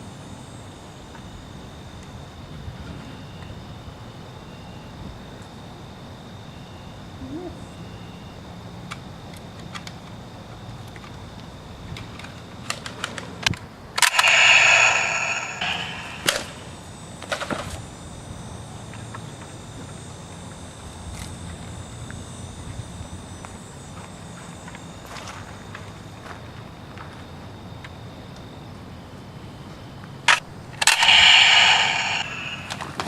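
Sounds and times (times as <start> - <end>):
gunshot-like bang: 14.0 - 16.7, 30.9 - 33.0
sharp clicks: 14.0 - 16.7, 30.8 - 33.0.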